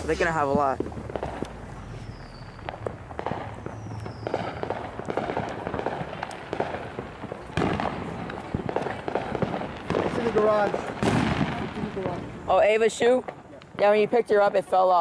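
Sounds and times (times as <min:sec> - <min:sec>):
fireworks crackling and banging: 0:00.0 - 0:15.0.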